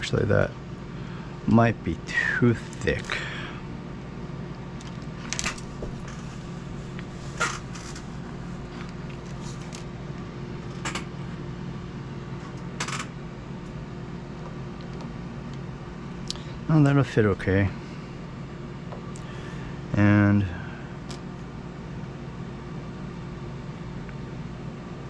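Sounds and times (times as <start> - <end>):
steady low hum: 0.0 - 25.0
small hard parts clicking: 12.5 - 13.1.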